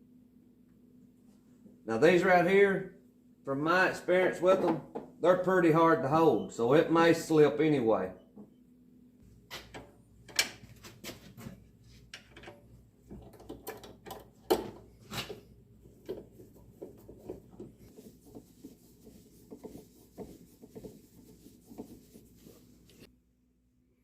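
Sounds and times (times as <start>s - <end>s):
tools and wooden parts clicking: 12.1s - 14.8s.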